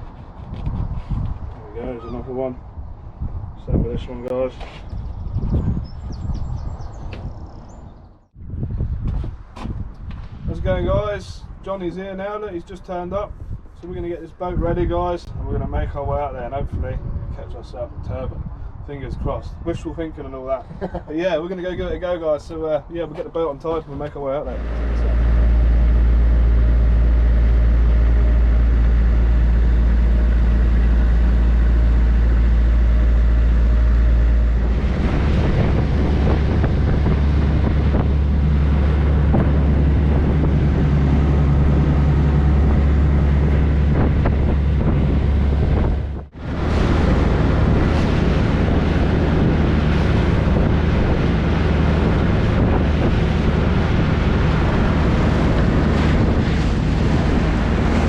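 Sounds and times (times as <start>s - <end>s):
wind buffeting microphone: 0.0s - 58.0s
boat engine running: 24.4s - 58.0s
water rushing past hull: 24.4s - 58.0s.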